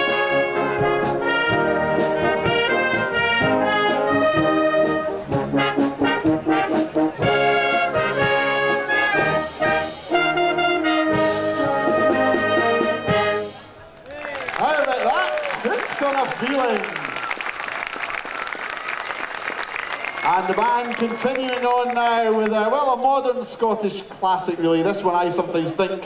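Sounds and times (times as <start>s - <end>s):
brass band playing: 0.0s - 13.8s.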